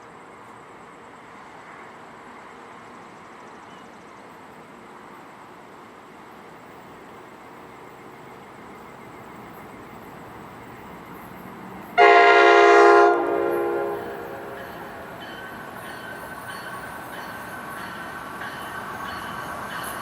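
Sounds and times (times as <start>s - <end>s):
train rumble: 0.0s - 20.0s
train air horn blast: 12.0s - 15.0s.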